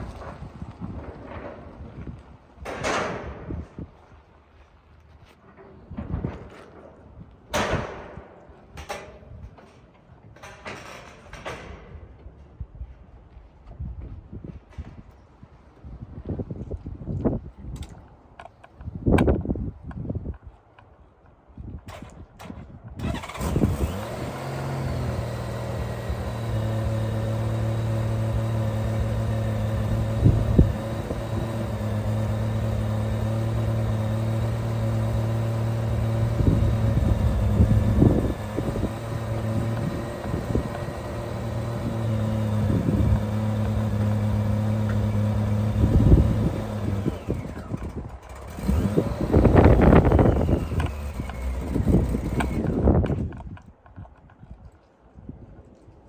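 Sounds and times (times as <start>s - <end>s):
motorcycle engine starting and idling: 21.9s - 53.7s.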